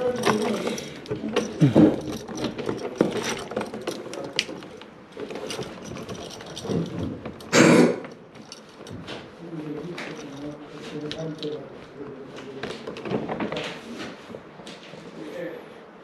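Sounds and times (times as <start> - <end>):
hand tools clicking and rattling: 0.0 - 11.8.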